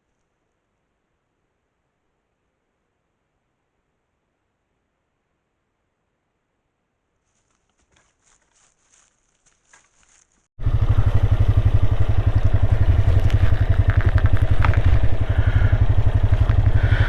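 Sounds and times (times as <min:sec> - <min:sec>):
off-road vehicle engine rumbling: 0:10.6 - 0:17.0
faint clicks: 0:12.2 - 0:17.0.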